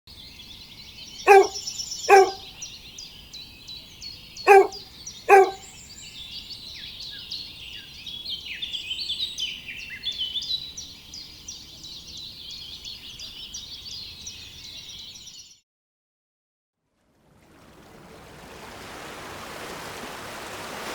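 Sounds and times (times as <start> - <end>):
songbirds chirping: 0.1 - 15.5
harsh bird calls: 1.3 - 2.7, 4.4 - 5.7.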